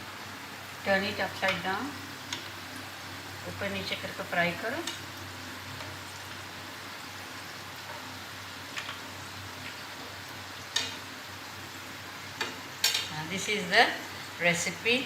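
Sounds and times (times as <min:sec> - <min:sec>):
food sizzling in deep oil: 0:00.0 - 0:15.0
tongs clicking against pan: 0:02.3 - 0:02.5, 0:04.8 - 0:05.1, 0:08.7 - 0:09.8, 0:10.7 - 0:11.0, 0:12.4 - 0:13.1.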